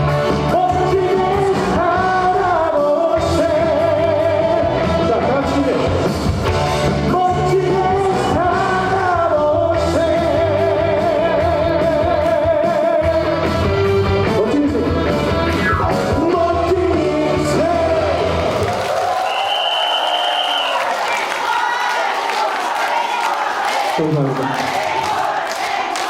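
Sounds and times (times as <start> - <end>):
band backing track: 0.0 - 18.9
person singing with vibrato: 0.4 - 5.9, 15.9 - 18.4.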